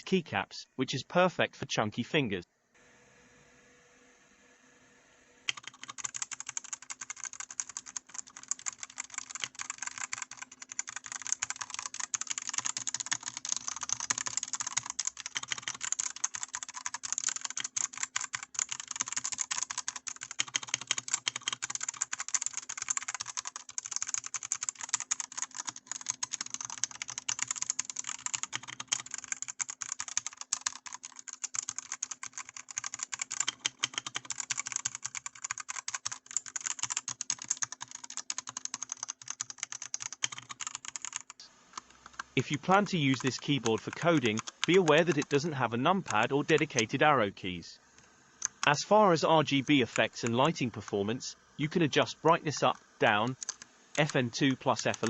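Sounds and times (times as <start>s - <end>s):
fast typing on mechanical keyboard: 5.5s - 41.4s, 42.1s - 46.9s, 48.4s - 48.7s, 53.4s - 54.2s.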